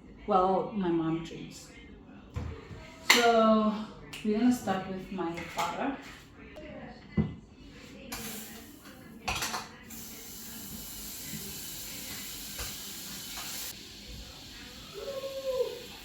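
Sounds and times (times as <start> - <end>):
pots and utensil clattering: 9.3 - 9.8.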